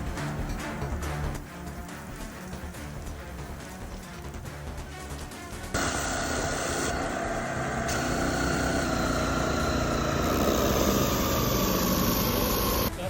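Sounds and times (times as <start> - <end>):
pressure washer whine: 5.8 - 12.9
water jet hissing: 5.8 - 12.9.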